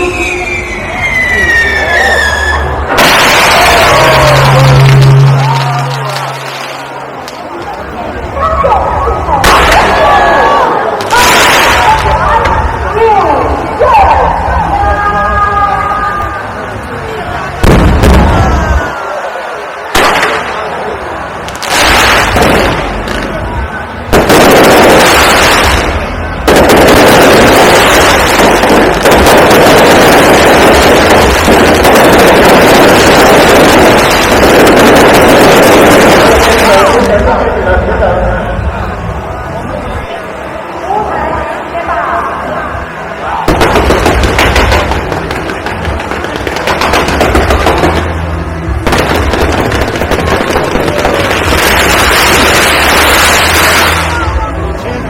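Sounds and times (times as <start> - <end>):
fireworks bursting and crackling: 0.0 - 8.2, 9.2 - 13.1, 17.4 - 37.6, 43.4 - 54.8.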